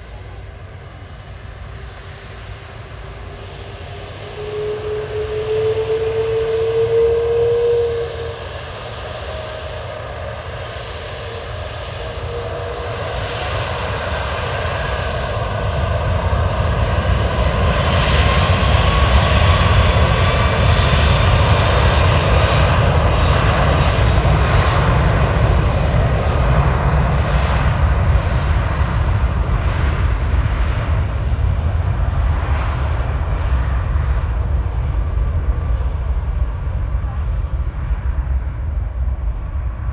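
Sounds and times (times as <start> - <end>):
jet engines roaring: 0.0 - 39.9
faint rising whine: 2.9 - 29.2
brief steady tone: 3.9 - 9.5.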